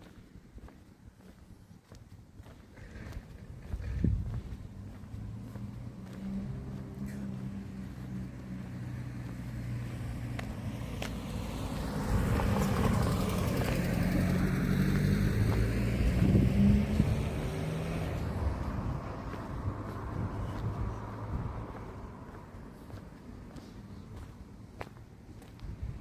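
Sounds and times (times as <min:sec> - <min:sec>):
tyre noise: 0:02.4 - 0:09.4
car engine hum: 0:02.4 - 0:26.0.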